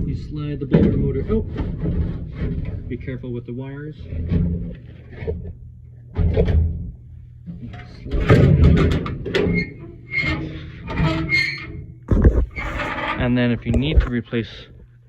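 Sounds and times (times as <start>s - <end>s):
sheet metal scraping and clunking: 8.3s - 14.2s
metallic squeals and rings: 9.5s - 11.9s.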